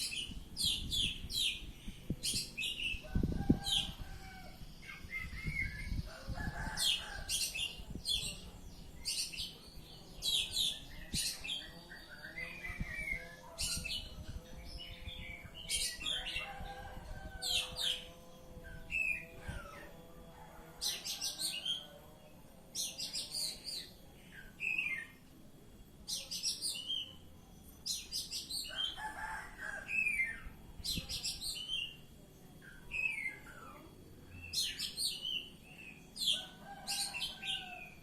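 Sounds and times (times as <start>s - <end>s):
bird singing: 0.0s - 38.0s.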